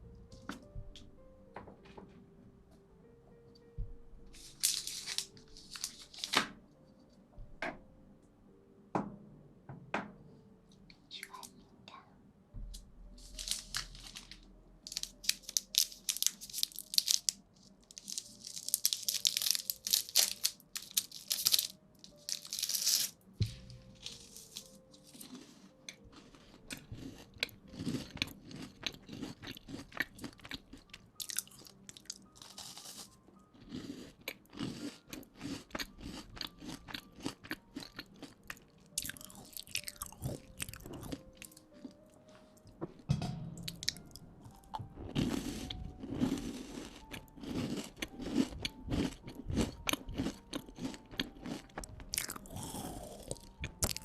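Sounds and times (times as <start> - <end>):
faint background music: 0.0 - 54.0
crisp crinkling: 4.4 - 6.6, 13.2 - 26.9, 31.2 - 33.1.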